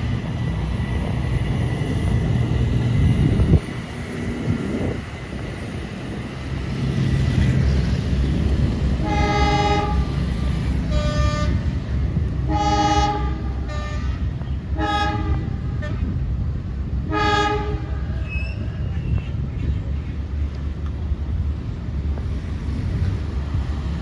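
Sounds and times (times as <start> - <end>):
rumble of passing train: 0.0 - 24.0
train horn blasts: 9.0 - 16.2, 17.0 - 18.3.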